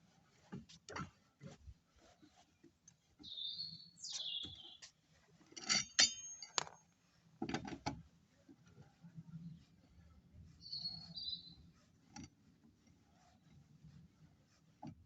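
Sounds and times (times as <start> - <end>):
metal tools clinking and knocking: 5.6 - 6.8.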